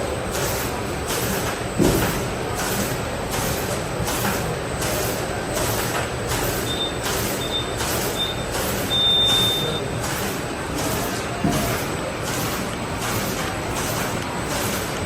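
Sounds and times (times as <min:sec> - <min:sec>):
packaging machine hissing: 0:00.1 - 0:15.0
short high beeps: 0:06.7 - 0:09.9.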